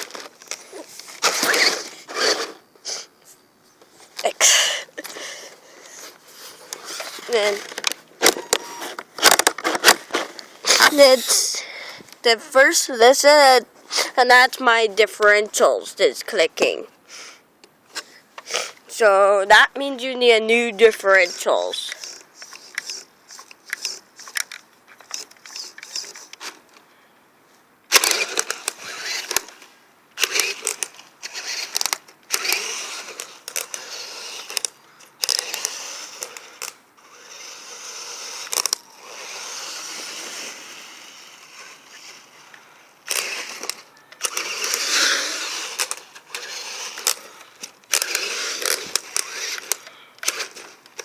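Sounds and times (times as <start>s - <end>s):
hands handling plastic parts: 5.0s - 11.4s, 39.9s - 51.0s.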